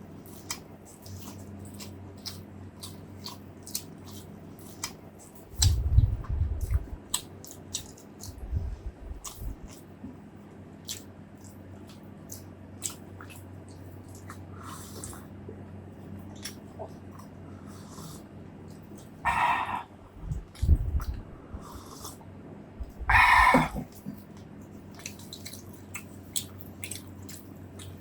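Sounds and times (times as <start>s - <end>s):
person chewing wetly: 0.2s - 9.9s, 10.8s - 15.3s, 16.2s - 22.2s, 22.8s - 28.0s
heavy low thuds: 5.6s - 7.0s, 20.1s - 21.5s.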